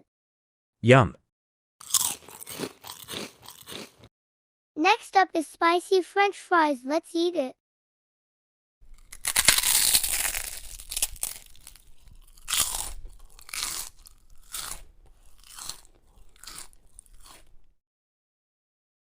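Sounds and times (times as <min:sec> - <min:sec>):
crunchy fries being chewed: 0:01.8 - 0:04.1, 0:08.8 - 0:17.8.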